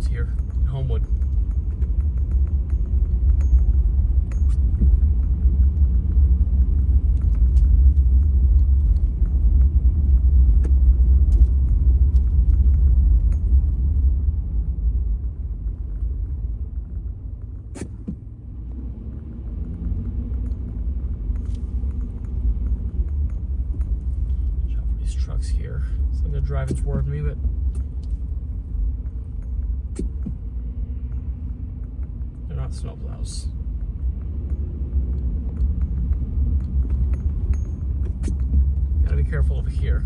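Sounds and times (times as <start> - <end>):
road and drivetrain rumble: 0.0 - 40.0
sharp click: 17.7 - 18.2.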